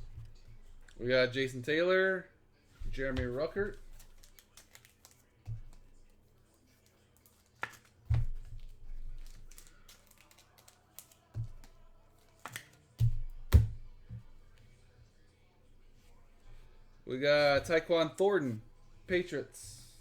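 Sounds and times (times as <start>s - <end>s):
cards and packaging handled: 2.7s - 14.6s.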